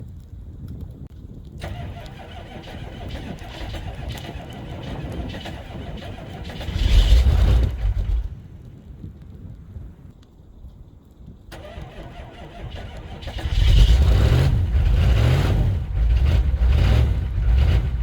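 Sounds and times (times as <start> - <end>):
diesel engine cold start: 1.6 - 8.4, 11.5 - 18.0.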